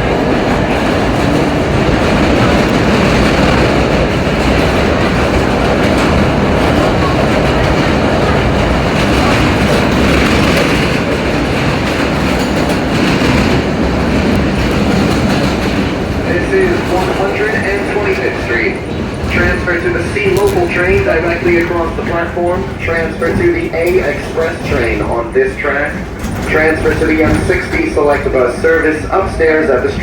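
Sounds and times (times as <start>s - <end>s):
subway car motor noise: 0.0s - 30.0s
subway wheels rumbling on rail: 0.0s - 30.0s.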